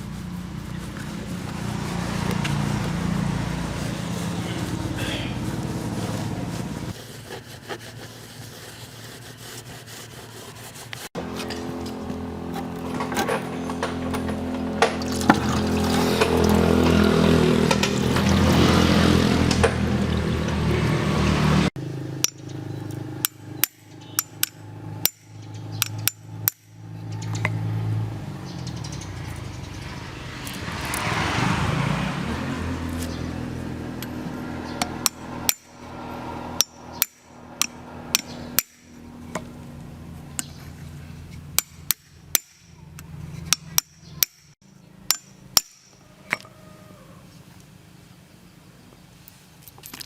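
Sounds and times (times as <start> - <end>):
hammer striking metal: 22.2 - 22.6, 23.2 - 26.8, 34.8 - 35.8, 36.5 - 39.5, 41.5 - 42.8, 43.5 - 46.0.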